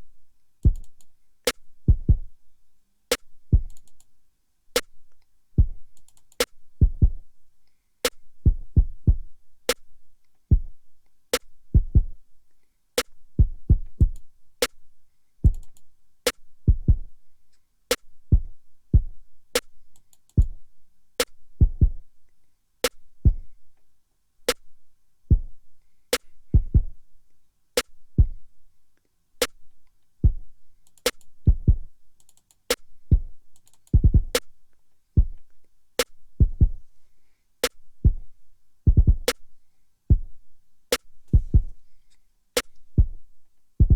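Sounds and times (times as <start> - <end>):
deep kick drums: 1.9 - 2.3, 3.5 - 3.7, 5.6 - 5.8, 6.8 - 7.2, 8.4 - 9.3, 10.5 - 10.8, 11.8 - 12.2, 13.4 - 14.2, 16.7 - 17.1, 21.6 - 22.0, 23.3 - 23.5, 25.3 - 25.5, 26.5 - 27.0, 28.2 - 28.4, 31.4 - 31.9, 33.1 - 33.3, 34.0 - 34.4, 35.2 - 35.4, 36.4 - 36.8, 38.0 - 38.3, 38.9 - 39.3, 40.1 - 40.4, 41.3 - 41.7, 43.0 - 43.2.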